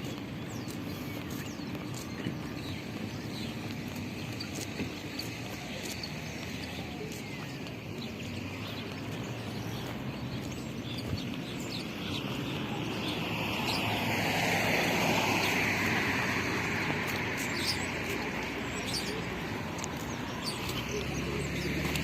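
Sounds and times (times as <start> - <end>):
outdoor background noise: 0.0 - 22.0.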